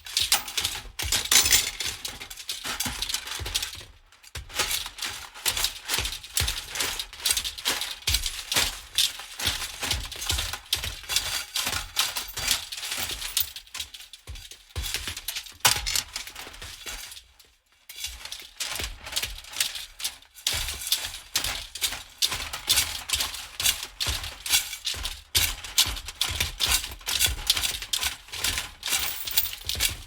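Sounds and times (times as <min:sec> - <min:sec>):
metal pieces rattling: 0:01.2 - 0:01.9, 0:12.8 - 0:13.6, 0:28.8 - 0:30.0.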